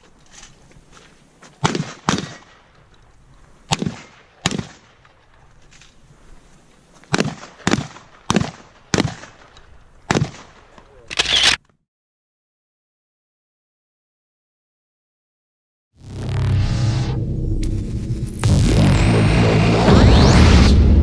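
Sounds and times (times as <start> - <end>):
shotgun firing: 1.6 - 2.6, 3.7 - 5.0, 7.1 - 9.5, 10.1 - 10.6.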